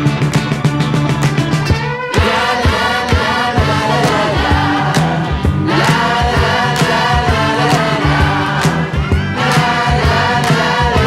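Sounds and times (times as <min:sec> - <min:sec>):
steady drum beat: 0:00.0 - 0:11.0
group of voices singing: 0:02.1 - 0:11.0.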